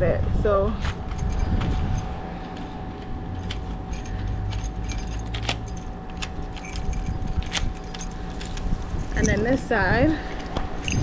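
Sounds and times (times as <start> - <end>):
keys jangling: 0.8 - 9.6
key clicking in lock: 3.4 - 9.4.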